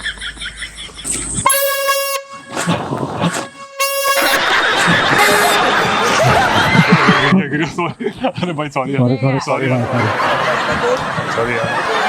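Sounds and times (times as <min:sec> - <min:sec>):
air horn blasts: 0:01.4 - 0:06.6.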